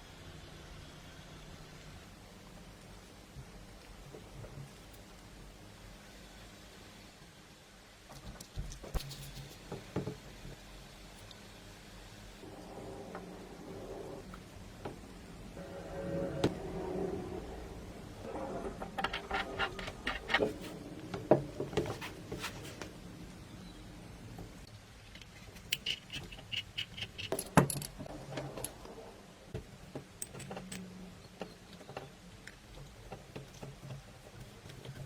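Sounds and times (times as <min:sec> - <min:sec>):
small metal parts clinking: 0:25.0 - 0:28.8, 0:30.2 - 0:31.0.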